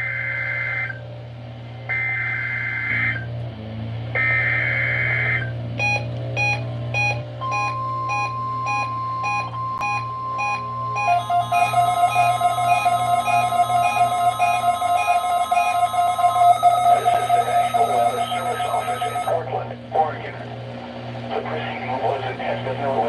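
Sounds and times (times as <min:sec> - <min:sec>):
steady warning alarm tone: 0:04.2 - 0:19.5
receiver alert beeps: 0:05.8 - 0:19.4
two-tone data warble: 0:09.4 - 0:19.5.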